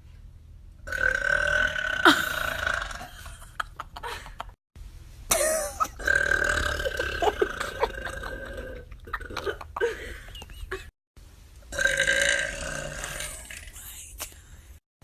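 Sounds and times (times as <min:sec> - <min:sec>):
girl burping loudly: 0:00.9 - 0:03.2, 0:05.3 - 0:09.7, 0:11.8 - 0:13.6.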